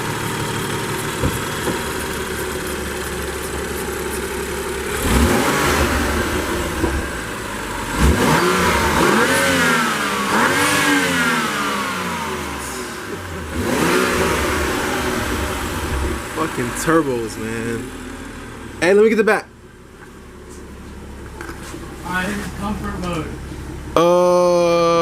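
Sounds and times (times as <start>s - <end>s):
car engine idling and revving: 0.0s - 25.0s.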